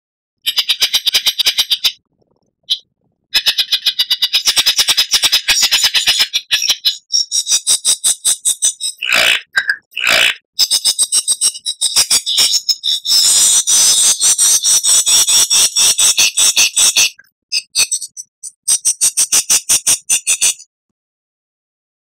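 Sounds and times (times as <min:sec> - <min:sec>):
bird song high clicking notes: 0:00.5 - 0:02.0, 0:03.4 - 0:13.1.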